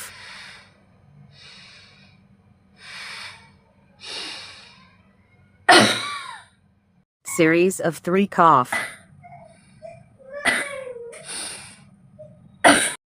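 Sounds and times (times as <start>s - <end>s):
person breathing: 0.0s - 5.0s
person coughing: 5.7s - 6.4s, 12.6s - 13.0s.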